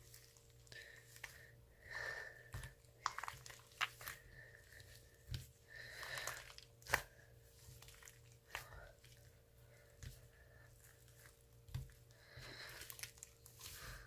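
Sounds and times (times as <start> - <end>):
slime squelching: 0.0 - 14.0
slime crackling and popping: 3.0 - 4.2.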